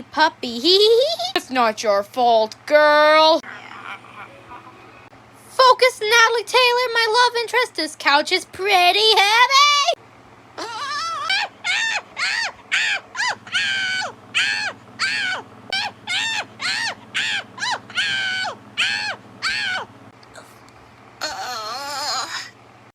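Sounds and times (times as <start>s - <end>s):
high-pitched voice crying: 10.6s - 20.5s, 21.2s - 22.6s.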